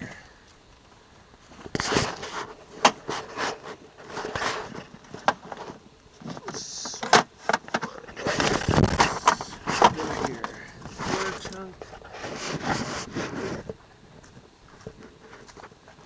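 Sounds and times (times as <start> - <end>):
short scrapes and rustles: 1.7 - 7.1, 8.2 - 13.8.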